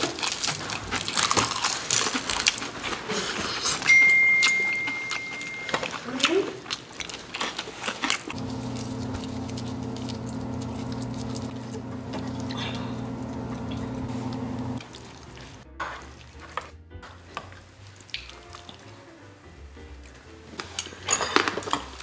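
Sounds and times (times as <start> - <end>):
eating sounds: 0.0 - 3.9, 5.7 - 16.6
steady hum of low tones: 8.4 - 14.8
tableware clicking and clinking: 20.7 - 22.0.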